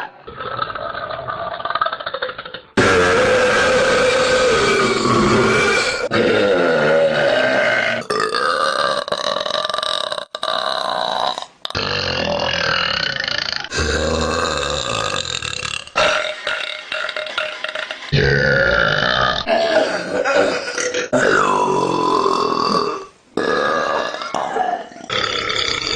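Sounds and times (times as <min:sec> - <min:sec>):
women burping: 0:16.0 - 0:25.8.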